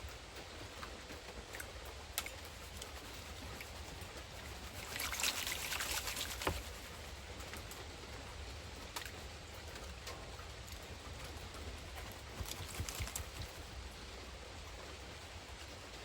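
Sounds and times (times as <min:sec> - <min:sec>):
water sloshing in a pan: 0:01.4 - 0:07.8, 0:11.6 - 0:13.6.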